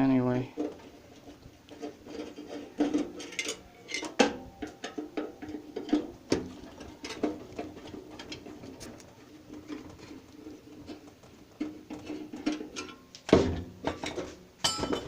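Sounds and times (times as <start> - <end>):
sharp metal clanks: 14.6 - 15.0.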